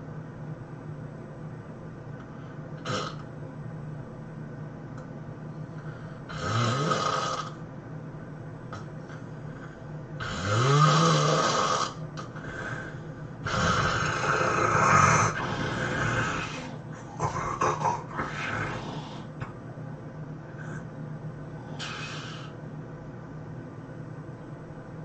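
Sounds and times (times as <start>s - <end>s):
person snoring loudly: 2.8s - 3.2s, 6.3s - 7.6s, 10.2s - 19.4s, 21.6s - 22.6s.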